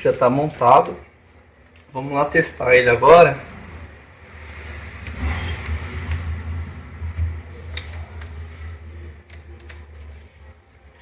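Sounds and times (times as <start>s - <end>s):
low rumble: 3.4s - 10.5s.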